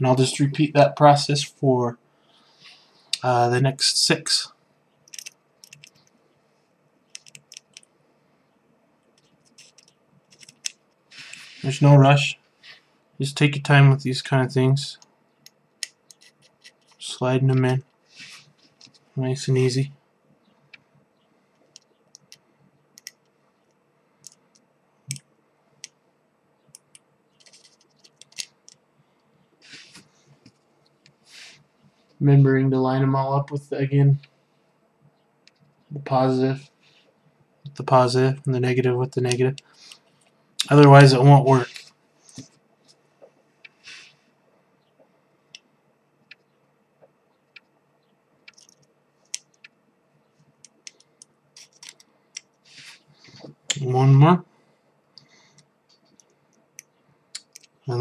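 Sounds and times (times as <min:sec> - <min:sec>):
small clicks and taps: 0:07.1 - 0:07.9, 0:23.0 - 0:26.0, 0:35.4 - 0:35.7, 0:48.4 - 0:49.8, 0:50.6 - 0:52.6
brief scrapes: 0:11.1 - 0:11.8, 0:18.2 - 0:18.6, 0:52.7 - 0:53.6
faint small clicks and taps: 0:35.4 - 0:35.8.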